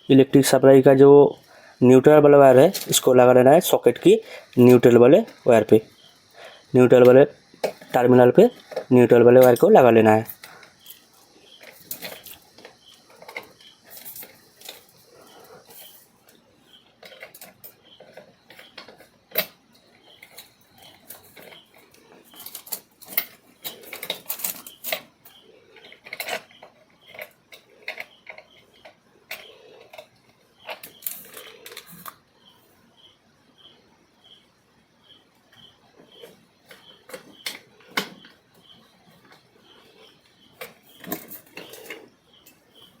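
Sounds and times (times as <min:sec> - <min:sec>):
clicks of wires and screws: 0:17.0 - 0:25.1.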